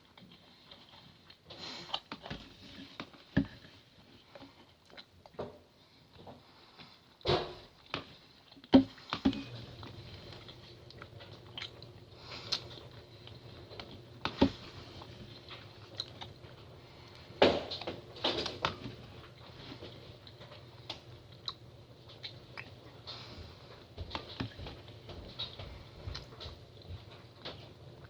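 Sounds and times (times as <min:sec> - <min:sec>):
person chewing soft food: 0:00.0 - 0:07.2, 0:07.8 - 0:28.0
low steady hum: 0:07.5 - 0:28.0.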